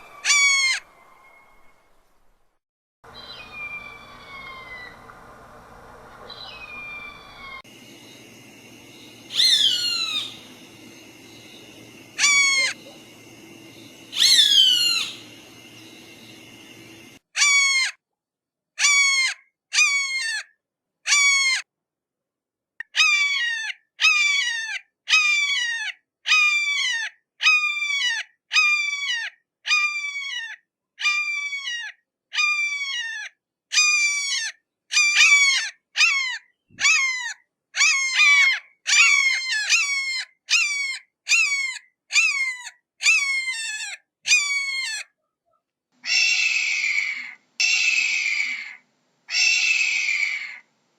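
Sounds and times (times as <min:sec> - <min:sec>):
hawk screaming: 0:03.1 - 0:05.1, 0:06.2 - 0:07.6, 0:08.9 - 0:17.6, 0:46.0 - 0:50.6
low background hum: 0:03.1 - 0:17.2.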